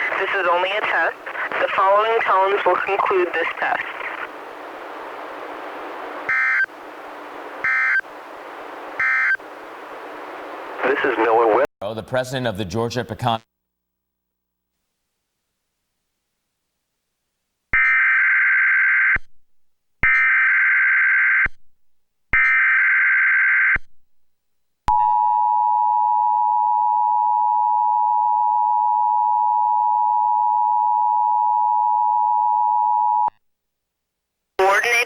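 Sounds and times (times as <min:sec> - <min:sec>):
faint hum: 0:00.0 - 0:11.7.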